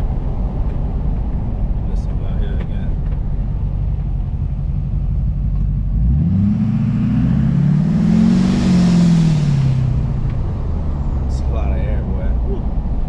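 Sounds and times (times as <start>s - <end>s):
diesel truck engine accelerating: 0.0s - 13.0s
loud blowing air noise: 6.8s - 10.9s.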